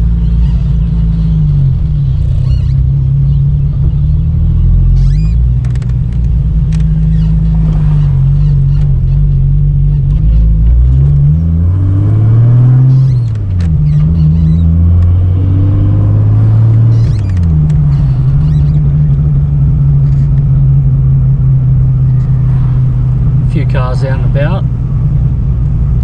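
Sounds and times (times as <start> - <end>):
car engine running while driving: 0.0 - 26.0.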